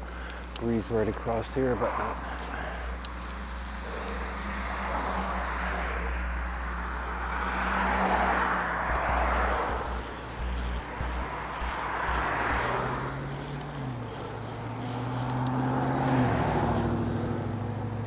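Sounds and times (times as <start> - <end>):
cars passing by: 0.0 - 18.0
low traffic rumble: 0.0 - 18.0.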